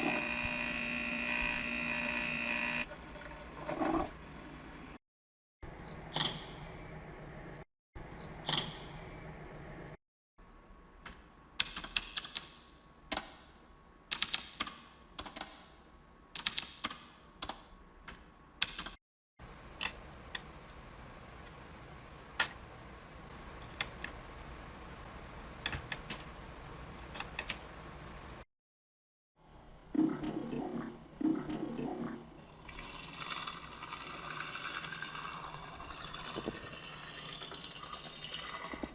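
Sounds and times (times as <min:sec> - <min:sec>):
low electrical hum: 0:19.4 - 0:28.4.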